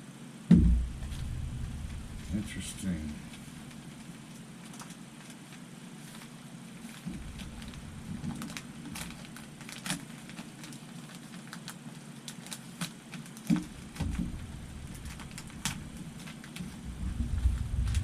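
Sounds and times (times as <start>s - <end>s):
heavier knocks: 0.5s - 4.4s, 7.1s - 9.7s, 13.5s - 18.0s
plastic parts clicking and tapping: 12.2s - 18.0s.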